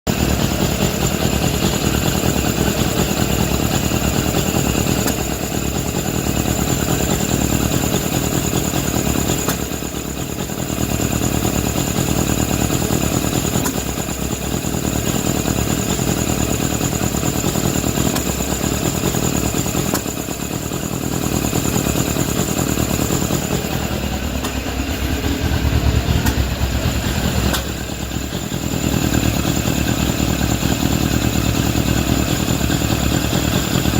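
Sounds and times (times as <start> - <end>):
motorcycle engine burping: 23.0 - 33.9.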